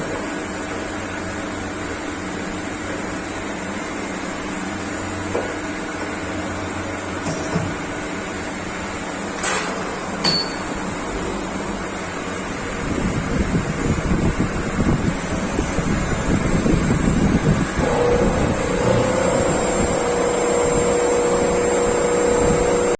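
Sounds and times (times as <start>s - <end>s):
cnc machine humming: 15.1s - 22.9s.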